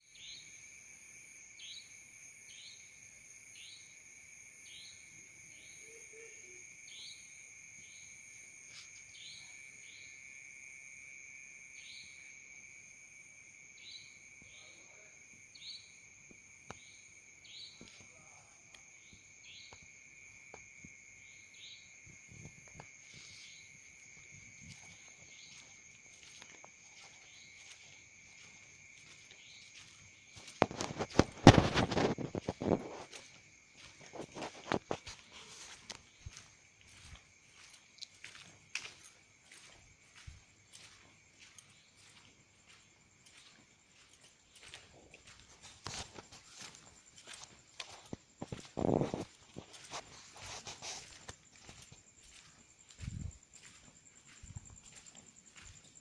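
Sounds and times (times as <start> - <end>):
crickets trilling: 0.0 - 56.0.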